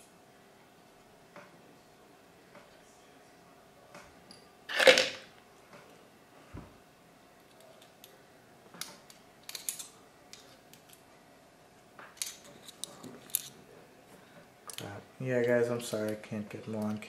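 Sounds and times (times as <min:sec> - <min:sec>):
small parts and tools clicking: 0:08.8 - 0:11.0, 0:12.2 - 0:13.6.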